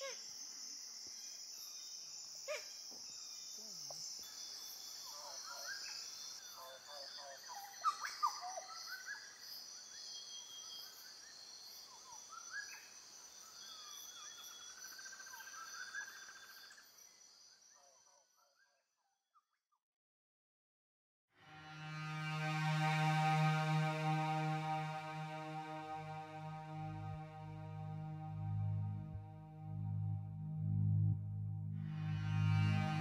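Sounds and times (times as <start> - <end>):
insects droning: 0.0 - 18.6.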